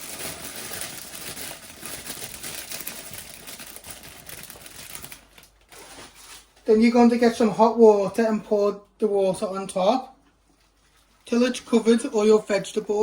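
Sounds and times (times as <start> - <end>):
rapid rattle of small pieces: 0.0 - 5.3
vegetables crinkling into a pan: 0.0 - 6.6.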